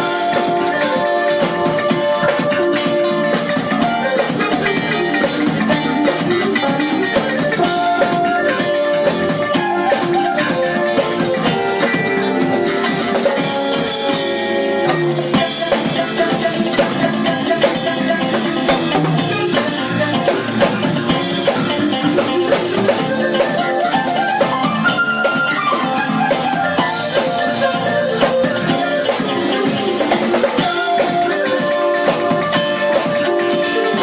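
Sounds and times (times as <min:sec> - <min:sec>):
jazz fusion band playing: 0:00.0 - 0:34.0.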